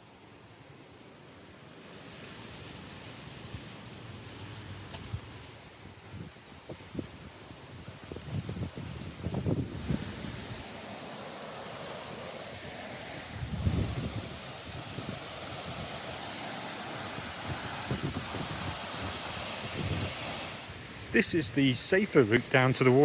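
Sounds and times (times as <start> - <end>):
wind buffeting microphone: 5.0 - 10.8, 12.5 - 21.2
waterfall rushing: 9.5 - 23.0.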